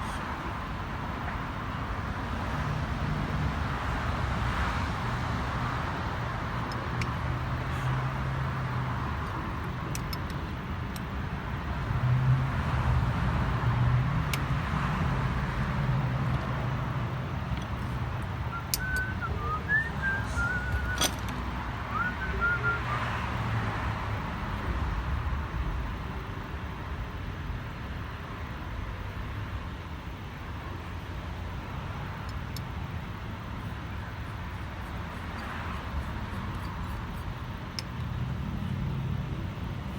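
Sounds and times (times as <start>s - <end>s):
low vehicle hum: 0.0s - 39.9s
faint clicks: 17.5s - 21.4s, 34.1s - 38.8s.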